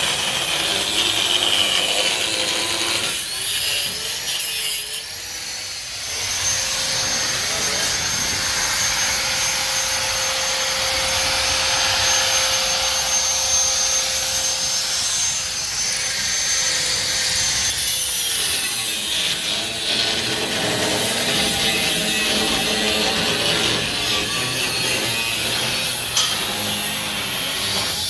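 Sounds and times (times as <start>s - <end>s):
electric motor whine: 5.8s - 17.9s.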